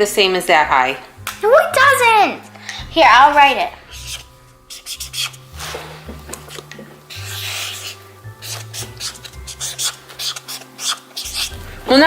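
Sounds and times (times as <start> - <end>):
background music: 0.0 - 12.0
pen scratching on paper: 3.9 - 5.4, 7.2 - 11.6.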